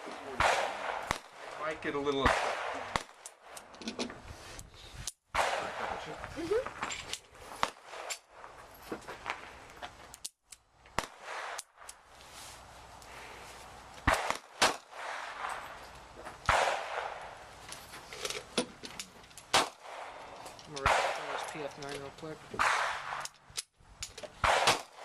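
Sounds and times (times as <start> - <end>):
distant gunshots: 0.0 - 1.6, 2.2 - 3.2, 5.3 - 6.2, 14.0 - 15.8, 16.5 - 17.4, 20.8 - 21.5, 22.6 - 23.2, 24.4 - 25.0
handgun shots with echo: 0.3 - 1.3, 2.2 - 3.2, 5.3 - 6.0, 14.0 - 15.5, 16.5 - 17.2, 20.8 - 21.6, 22.6 - 23.3, 24.4 - 25.0.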